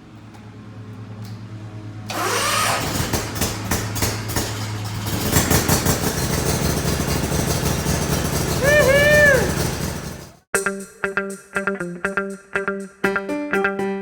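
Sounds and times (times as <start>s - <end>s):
lawnmower engine starting: 2.0s - 10.5s.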